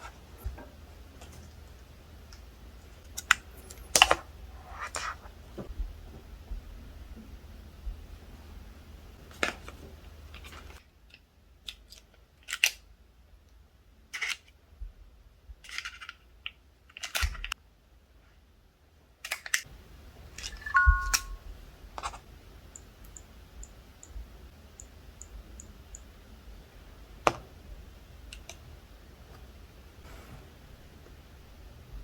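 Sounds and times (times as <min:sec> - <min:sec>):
two-note electronic chime: 0:20.6 - 0:21.4.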